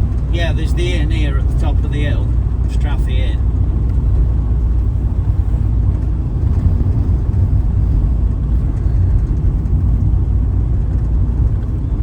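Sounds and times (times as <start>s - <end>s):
van driving rumble: 0.0s - 12.0s
strong wind noise: 3.4s - 12.0s.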